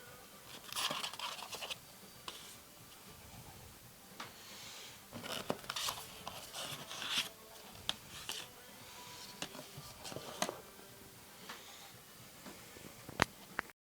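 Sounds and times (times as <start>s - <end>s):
packaging rustling and scraping: 0.5s - 2.6s, 5.1s - 10.7s.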